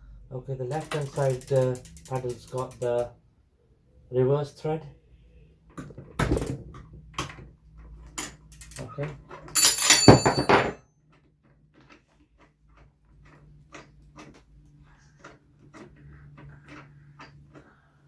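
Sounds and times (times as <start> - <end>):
metal tool clanking on bike pedal: 0.7 - 3.1, 8.2 - 10.8
ringing metallic clatter: 9.6 - 10.8.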